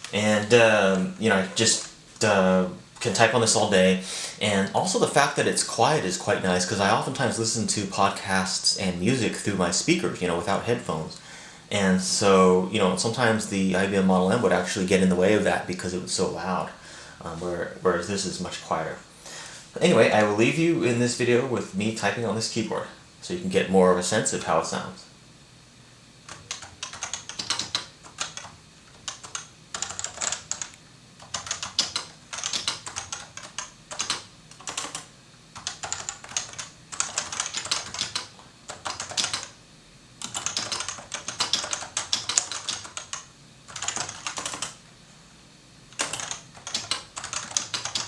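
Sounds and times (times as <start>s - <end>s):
soft keyboard typing: 26.3s - 39.6s, 40.2s - 44.8s, 45.9s - 48.0s.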